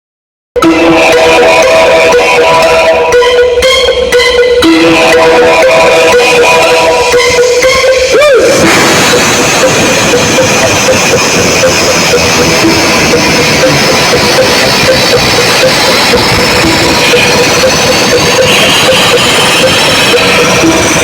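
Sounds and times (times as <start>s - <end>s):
distorted loud music with beat: 0.6s - 21.0s.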